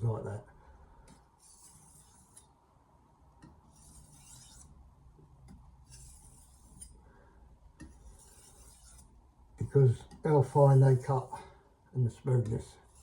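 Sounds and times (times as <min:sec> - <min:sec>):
knife sharpening on whetstone: 0:01.4 - 0:02.5, 0:03.7 - 0:04.7, 0:05.8 - 0:07.0, 0:07.8 - 0:09.1.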